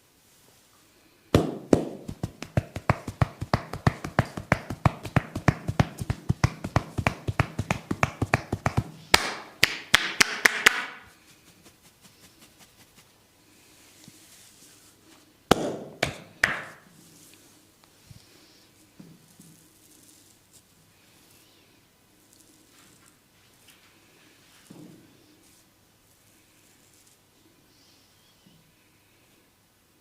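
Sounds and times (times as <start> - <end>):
hands tapping on head: 1.4 - 11.1, 15.5 - 16.8.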